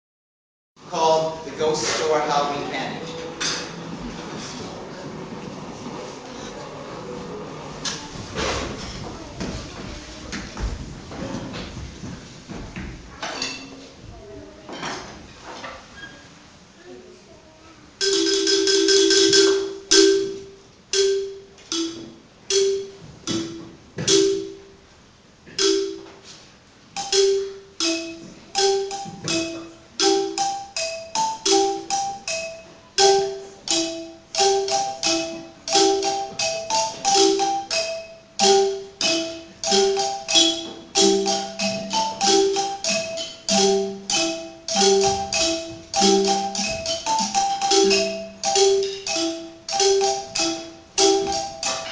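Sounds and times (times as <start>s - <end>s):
xylophone struck with mallets: 18.0s - 24.8s, 25.6s - 26.4s, 27.0s - 51.9s.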